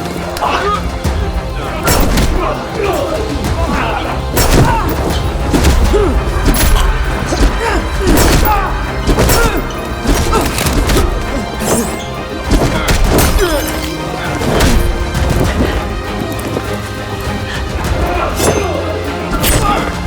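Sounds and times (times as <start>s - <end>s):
action film score: 0.0s - 20.0s
punches and body blows: 1.9s - 16.8s.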